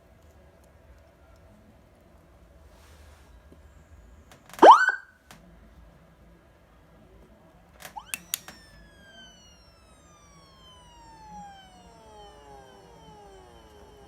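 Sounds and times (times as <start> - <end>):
electronic siren wail: 4.6 - 5.0, 7.9 - 14.0
sharp clicks: 7.8 - 14.0.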